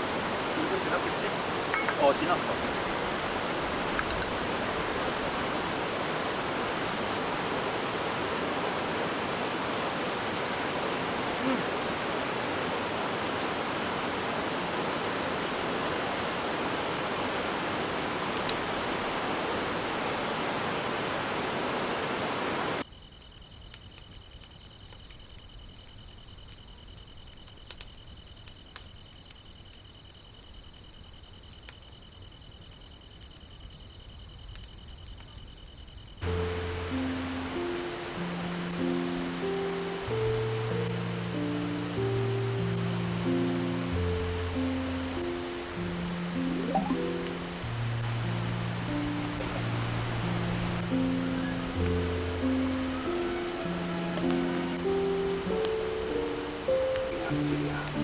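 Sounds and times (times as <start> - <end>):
mountain stream rushing: 0.0 - 22.8, 43.8 - 58.0
light scattered ticks: 3.6 - 4.6, 22.8 - 36.6, 46.6 - 58.0.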